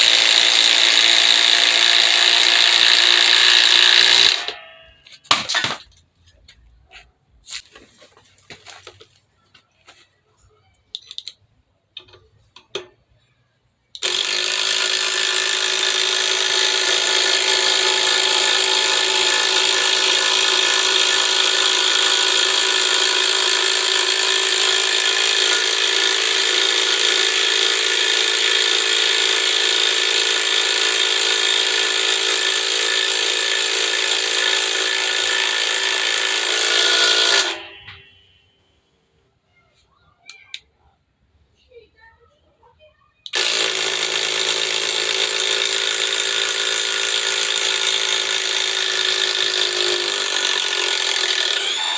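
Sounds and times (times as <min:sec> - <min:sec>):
impact driver hammering: 0:00.0 - 0:06.0, 0:14.0 - 0:38.2, 0:43.3 - 0:51.9.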